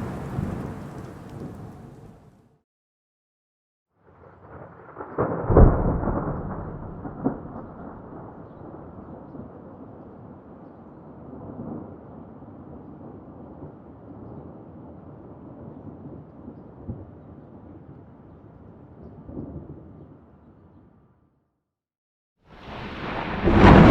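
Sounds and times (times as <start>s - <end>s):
low thunder rumble: 0.0s - 2.4s, 4.0s - 18.6s, 22.6s - 23.9s
thunderclap cracks: 0.0s - 2.4s, 4.2s - 9.0s, 22.6s - 23.9s.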